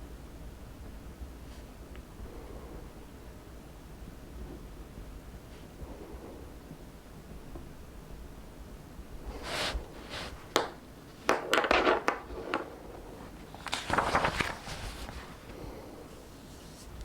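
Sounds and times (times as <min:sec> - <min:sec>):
book pages turning: 0:09.3 - 0:15.6.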